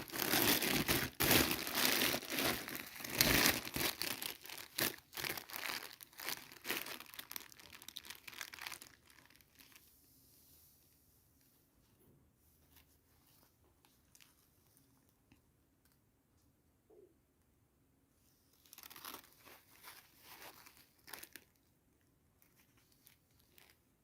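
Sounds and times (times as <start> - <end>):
packaging crinkling: 0.0 - 9.8, 18.6 - 21.6, 22.4 - 23.8.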